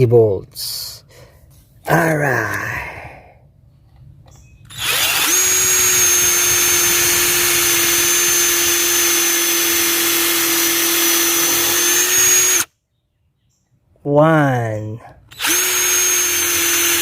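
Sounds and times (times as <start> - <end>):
impact driver motor whine: 4.7 - 12.7, 15.3 - 17.0.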